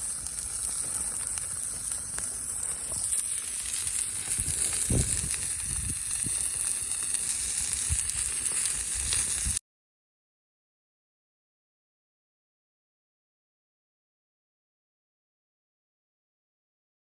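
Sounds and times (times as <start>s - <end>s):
food sizzling: 0.0s - 9.6s.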